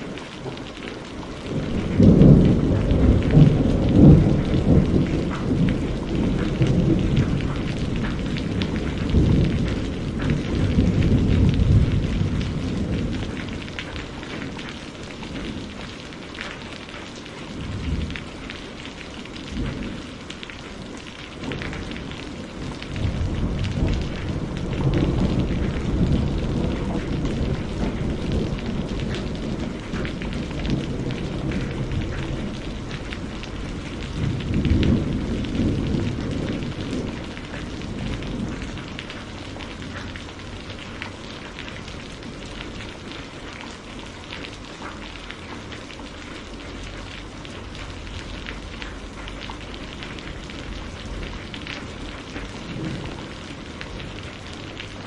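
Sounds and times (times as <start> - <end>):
thunder rumbling: 0.0 - 45.6, 46.2 - 55.0
steady rain falling: 0.0 - 55.0.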